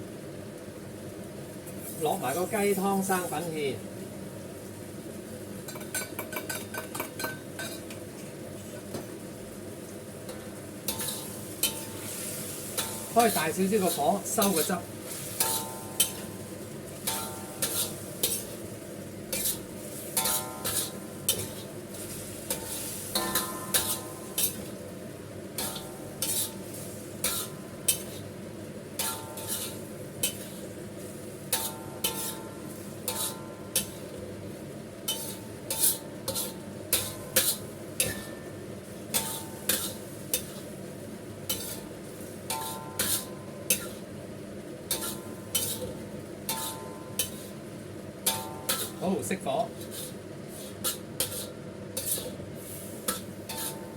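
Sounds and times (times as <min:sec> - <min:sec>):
sauce sizzling: 0:00.0 - 0:53.9
spatula scraping metal pan: 0:15.1 - 0:16.3, 0:17.0 - 0:18.6, 0:19.3 - 0:24.6, 0:25.6 - 0:28.2, 0:29.0 - 0:30.7, 0:31.5 - 0:34.0, 0:35.1 - 0:38.4, 0:39.1 - 0:40.6, 0:41.5 - 0:41.9, 0:42.5 - 0:44.0, 0:44.9 - 0:45.9, 0:46.5 - 0:47.6, 0:49.8 - 0:52.4, 0:53.1 - 0:53.9.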